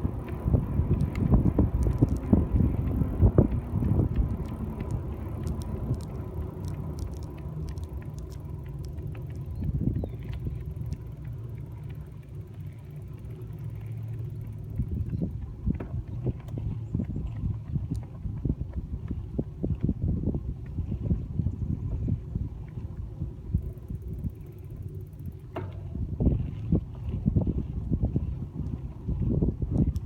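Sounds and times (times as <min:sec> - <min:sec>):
bike knocks and rattles: 0:00.0 - 0:11.1, 0:14.5 - 0:18.1, 0:25.2 - 0:27.5
bicycle tyre road noise: 0:00.0 - 0:30.0.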